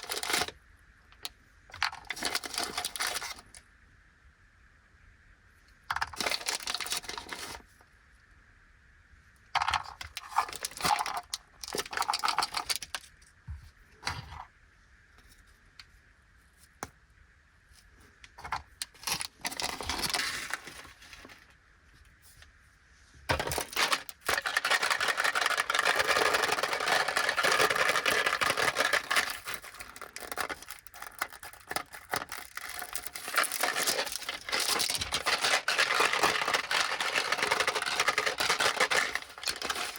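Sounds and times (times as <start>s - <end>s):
candy wrapper crinkling: 0.0s - 0.5s, 1.8s - 3.6s, 6.0s - 7.6s, 9.6s - 13.1s, 18.8s - 21.4s, 23.3s - 39.9s
plastic wrappers crinkling: 0.0s - 0.5s, 1.8s - 3.6s, 6.0s - 7.6s, 9.9s - 13.1s, 18.8s - 21.5s, 23.3s - 39.9s
small pieces clattering: 0.0s - 0.5s, 1.7s - 3.6s, 5.9s - 7.6s, 9.6s - 13.1s, 18.4s - 21.5s, 23.3s - 39.9s.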